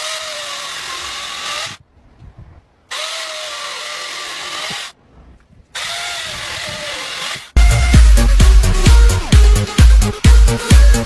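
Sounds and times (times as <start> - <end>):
electric saw motor whining: 2.9 - 4.9, 5.8 - 9.3.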